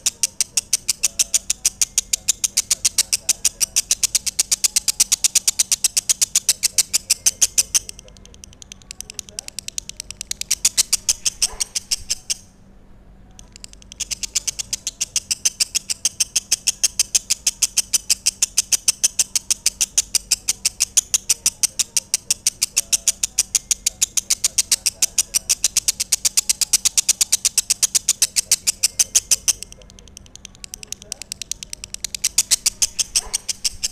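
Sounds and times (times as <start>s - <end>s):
bird chattering high chirps: 0.0s - 12.6s, 13.4s - 33.9s.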